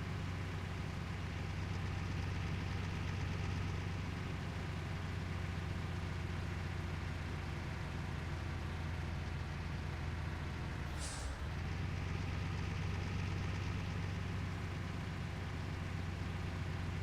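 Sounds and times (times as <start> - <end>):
diesel engine running: 10.4 - 17.0
compressed air hiss: 10.9 - 11.4.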